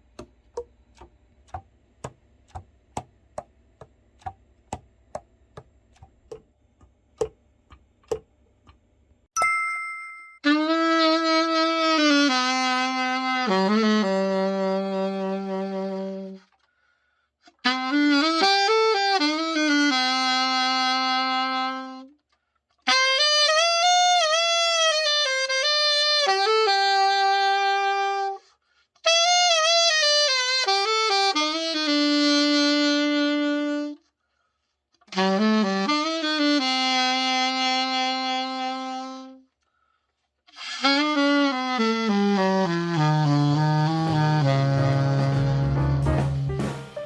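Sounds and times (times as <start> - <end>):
alto saxophone solo: 10.4 - 16.6, 17.4 - 22.2, 22.8 - 34.1, 35.0 - 39.6, 40.5 - 47.0.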